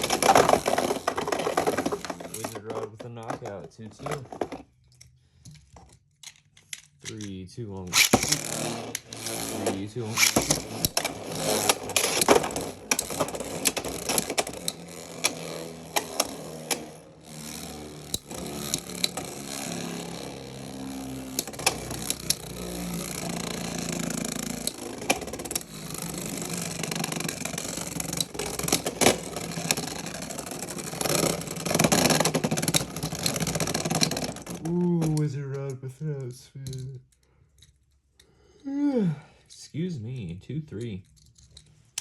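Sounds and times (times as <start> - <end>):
spinning tops whirring: 0.0 - 2.8, 7.8 - 34.6
tops clacking against plastic: 10.2 - 16.9.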